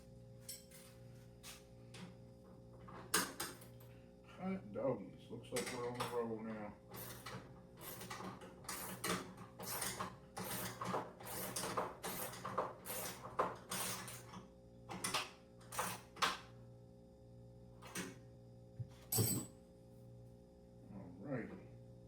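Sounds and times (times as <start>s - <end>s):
sharp metallic clank: 19.1s - 19.5s.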